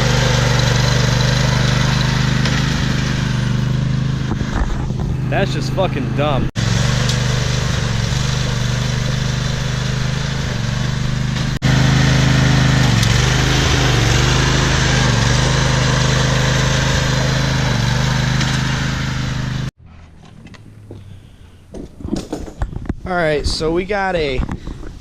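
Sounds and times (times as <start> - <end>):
motorbike engine running: 0.0 - 19.7.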